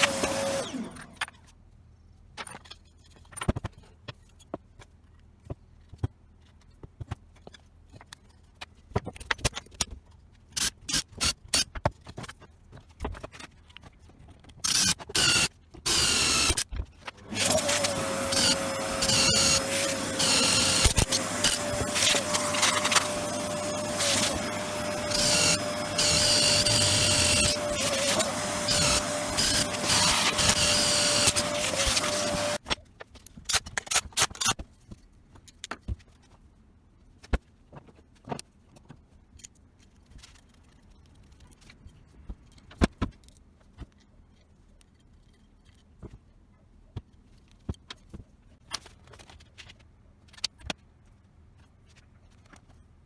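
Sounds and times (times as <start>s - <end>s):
power tool whining and grinding: 0.0s - 1.3s, 14.7s - 16.6s, 17.2s - 32.6s
parts being handled: 2.3s - 36.4s.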